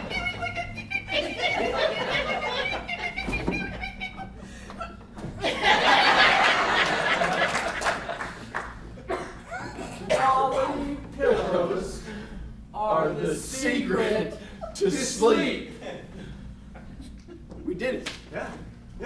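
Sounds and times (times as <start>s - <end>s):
audience laughing: 0.0s - 10.1s.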